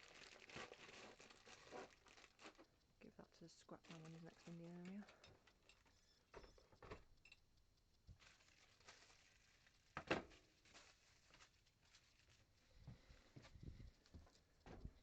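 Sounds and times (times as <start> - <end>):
faint knocks and clicks: 1.8 - 10.4, 12.8 - 15.0.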